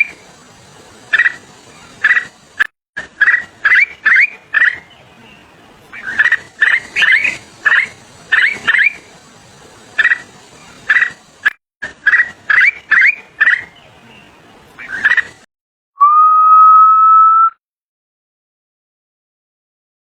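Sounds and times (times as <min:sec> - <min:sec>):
small bird chirping: 0:01.0 - 0:09.2, 0:09.8 - 0:15.4.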